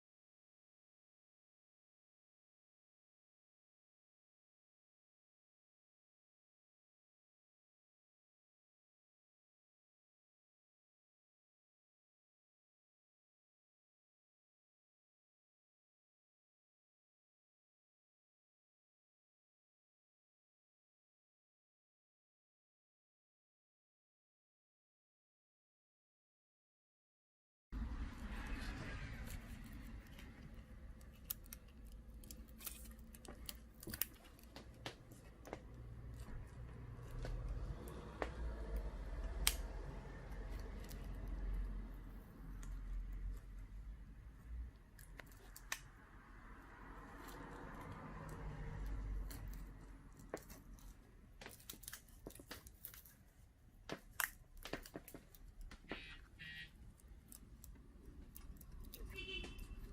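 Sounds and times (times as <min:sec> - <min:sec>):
light clicks and scrapes: 0:47.0 - 0:56.0.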